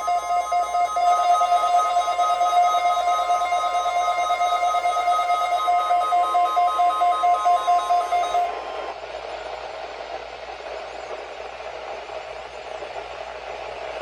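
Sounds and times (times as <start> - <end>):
alert tone with pulsing beeps: 0.0 - 8.9.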